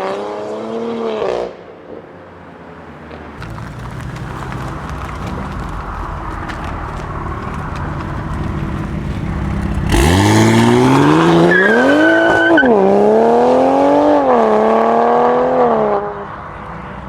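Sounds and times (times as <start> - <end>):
car engine revving: 3.4 - 17.0
tyre squeal: 10.9 - 12.9.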